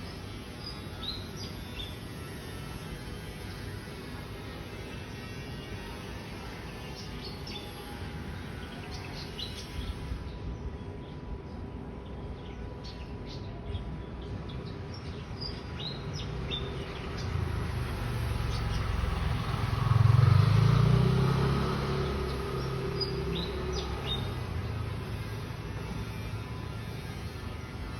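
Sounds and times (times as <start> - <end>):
vehicle engine rumble passing: 16.5 - 26.6
small birds chirping: 21.3 - 24.4.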